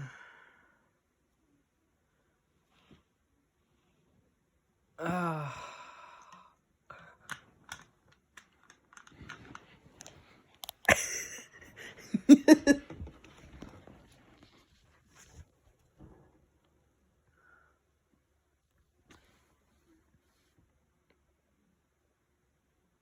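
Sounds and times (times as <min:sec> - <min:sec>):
person sighing: 0:05.0 - 0:06.6, 0:10.9 - 0:12.8
small clicks: 0:07.2 - 0:10.9.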